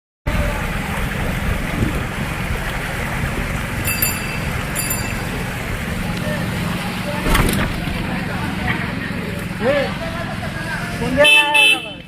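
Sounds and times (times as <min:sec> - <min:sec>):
wind buffeting microphone: 0:00.3 - 0:08.3.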